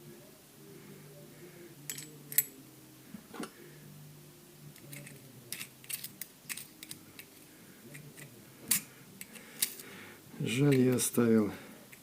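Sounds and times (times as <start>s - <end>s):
metallic clicks and clinks: 1.9s - 2.5s, 4.8s - 7.3s.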